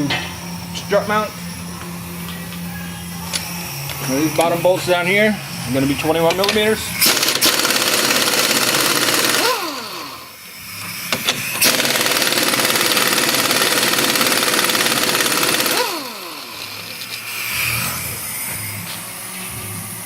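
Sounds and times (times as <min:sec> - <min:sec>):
impact wrench hammering: 0:06.0 - 0:17.2.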